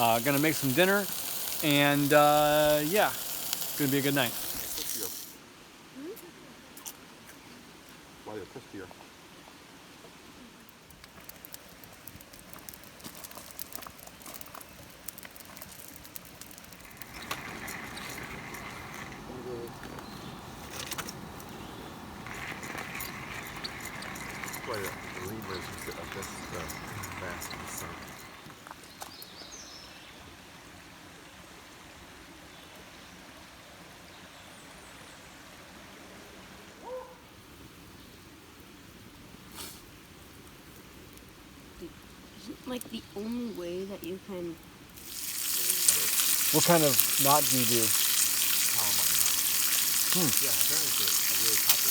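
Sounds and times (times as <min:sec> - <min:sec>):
food sizzling in a pan: 0:00.0 - 0:05.4, 0:11.2 - 0:19.6, 0:45.0 - 0:51.9
flowing creek: 0:00.0 - 0:51.9
crackling pops: 0:10.9 - 0:21.6.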